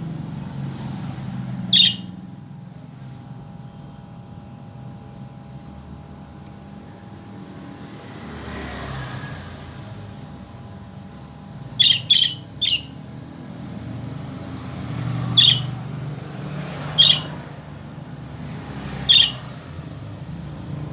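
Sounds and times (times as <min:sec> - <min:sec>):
bird high-pitched calls: 0:01.6 - 0:02.2, 0:11.8 - 0:13.1, 0:14.8 - 0:16.0, 0:16.7 - 0:17.6, 0:18.8 - 0:19.7.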